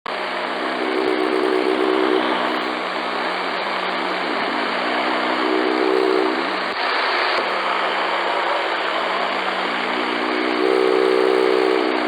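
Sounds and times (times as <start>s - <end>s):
radio static hiss: 0.1s - 12.0s.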